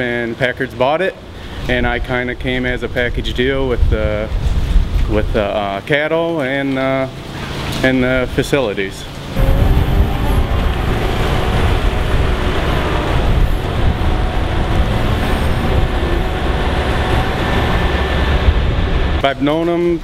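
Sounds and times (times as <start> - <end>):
loud machinery rumble: 9.0 - 20.0.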